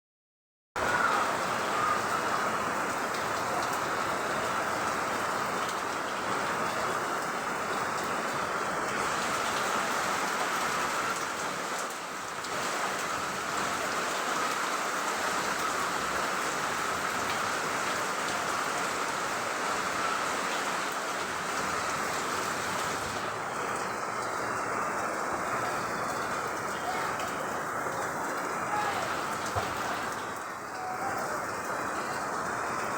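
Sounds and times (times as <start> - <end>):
steady rain pouring: 0.8 - 32.9.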